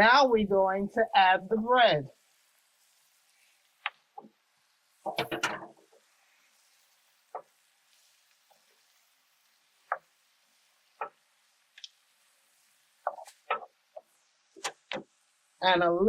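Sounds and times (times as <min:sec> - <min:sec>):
vegetables sizzling in a pan: 0:00.0 - 0:16.0
light stirring knocks: 0:03.8 - 0:04.4, 0:05.0 - 0:15.2.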